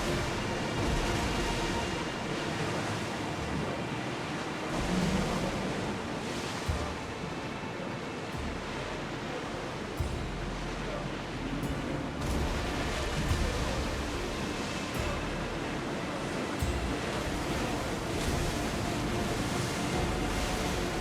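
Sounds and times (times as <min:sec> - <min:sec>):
sea waves rushing: 0:00.0 - 0:21.0
low rumble: 0:08.3 - 0:21.0.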